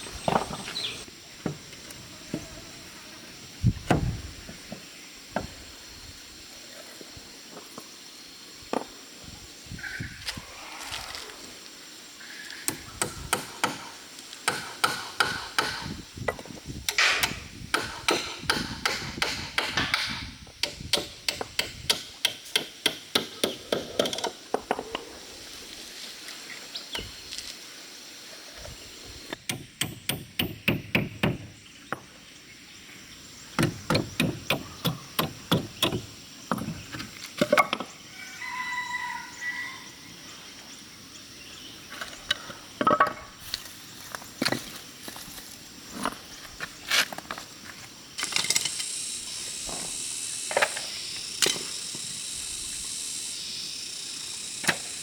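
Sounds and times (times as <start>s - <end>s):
hammer blows on wood: 16.9s - 24.1s.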